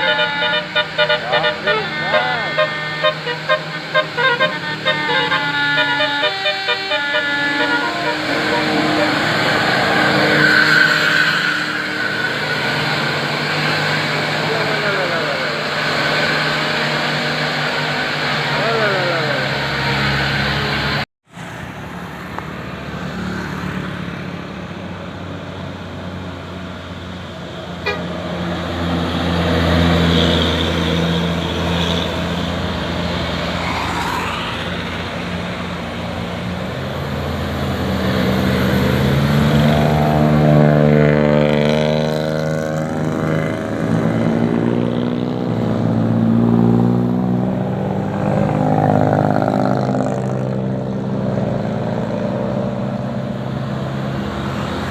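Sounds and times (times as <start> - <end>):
bus horn playing a multi-note tune: 0.0 - 21.0, 27.8 - 28.4
bus engine running: 0.0 - 54.9.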